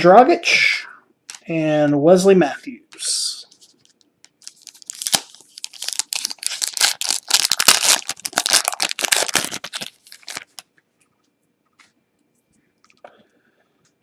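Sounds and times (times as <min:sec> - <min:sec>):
foil wrapper crinkling: 0:03.6 - 0:10.7.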